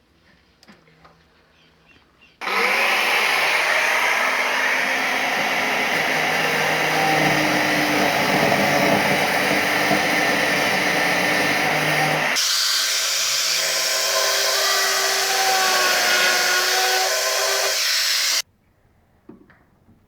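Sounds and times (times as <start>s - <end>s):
electric motor fan running: 2.4s - 12.4s.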